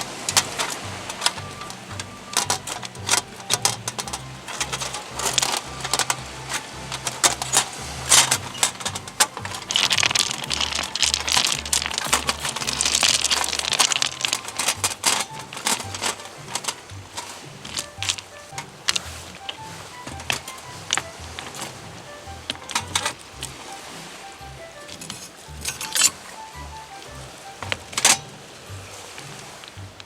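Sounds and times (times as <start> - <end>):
sharp clicks and crackles: 0.0 - 21.7
music with repeating bass line: 0.0 - 24.8, 25.4 - 30.0.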